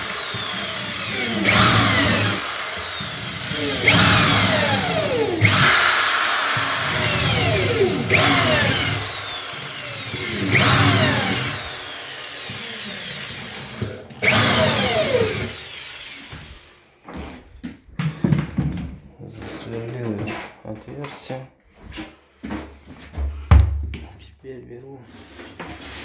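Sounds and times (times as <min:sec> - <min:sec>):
electric drill boring into wood: 0:00.0 - 0:16.7.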